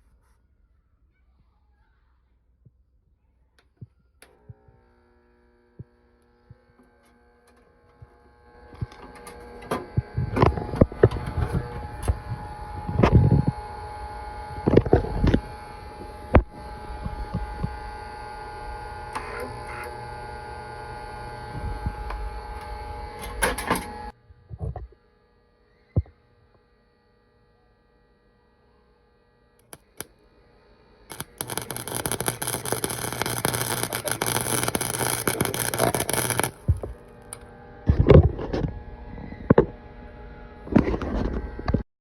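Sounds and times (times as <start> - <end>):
clicks: 29.6 - 30.1, 31.1 - 37.4
welding arc crackling: 29.6 - 30.1, 31.1 - 37.4
welder humming: 29.6 - 37.5.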